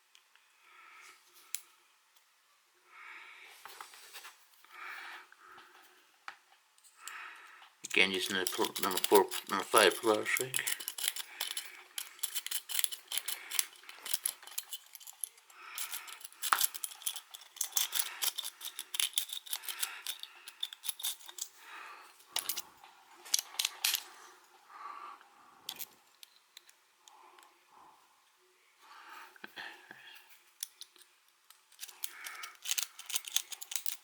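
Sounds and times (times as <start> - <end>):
lock pick raking in padlock: 7.9 - 21.6, 30.6 - 34.0.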